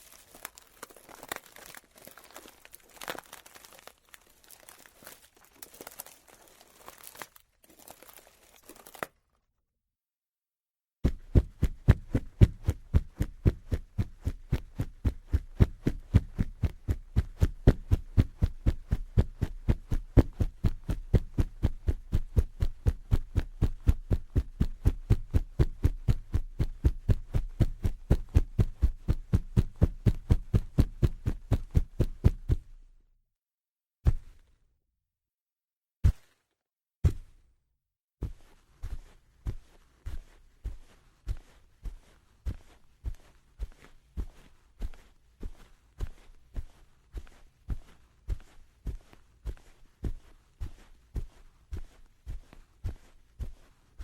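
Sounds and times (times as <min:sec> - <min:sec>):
faint crinkling rustle: 0:00.0 - 0:09.4
heavy running footsteps: 0:11.0 - 0:32.6.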